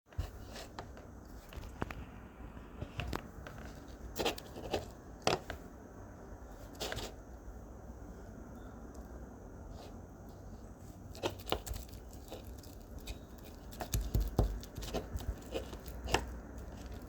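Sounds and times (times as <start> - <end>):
rustling: 9.7 - 17.0.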